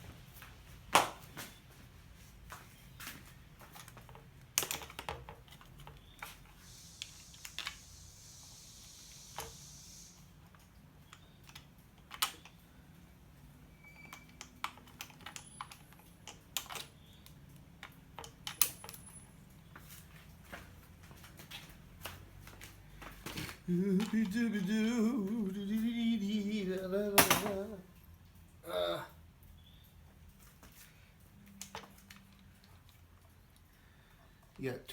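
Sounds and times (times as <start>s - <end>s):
soft hiss: 6.3s - 10.8s
metal hardware clicking and knocking: 27.2s - 27.7s.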